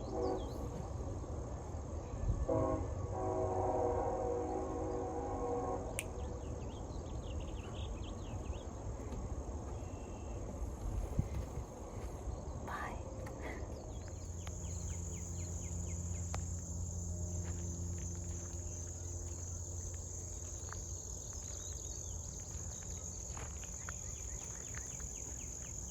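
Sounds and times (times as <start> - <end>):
low hum: 9.8 - 25.9
insects trilling: 9.9 - 25.9.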